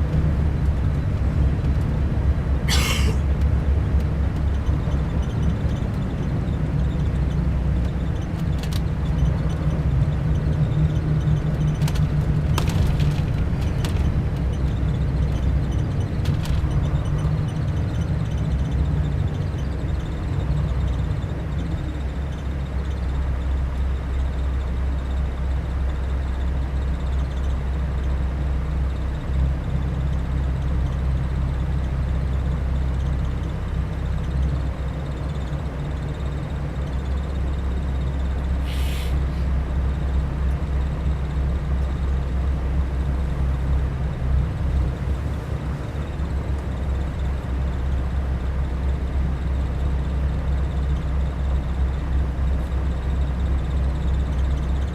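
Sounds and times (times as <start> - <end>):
diesel engine rumbling: 0.0 - 54.9
short air hiss: 38.6 - 39.5.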